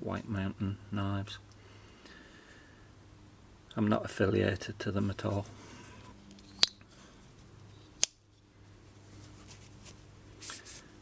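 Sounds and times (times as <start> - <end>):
faint rustle: 6.9 - 11.0.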